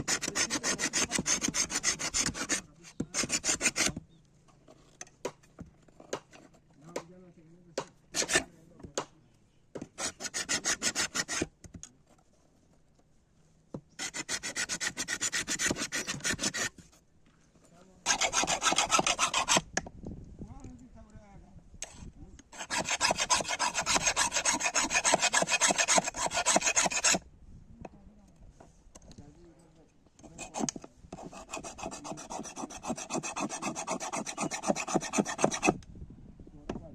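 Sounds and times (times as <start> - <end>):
hand scraping strokes: 0.0 - 4.0, 9.8 - 11.5, 14.0 - 19.7, 21.9 - 27.2, 30.2 - 35.8.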